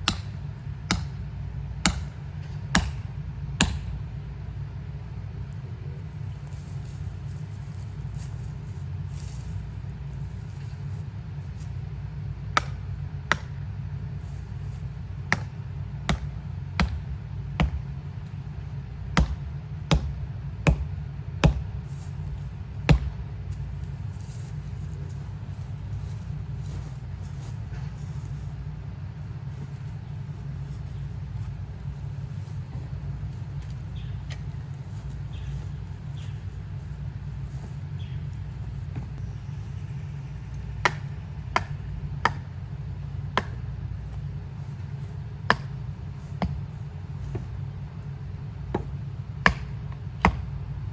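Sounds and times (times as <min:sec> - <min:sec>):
low rumble: 0:00.0 - 0:50.9
sharp knocks: 0:12.5 - 0:13.7, 0:14.5 - 0:17.9, 0:19.2 - 0:23.6, 0:43.2 - 0:50.6.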